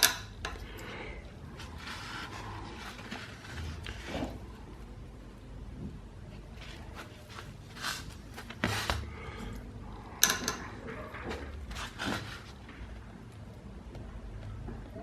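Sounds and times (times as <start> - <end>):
metal lock parts clicking and tapping: 0.0 - 0.8, 10.2 - 10.8.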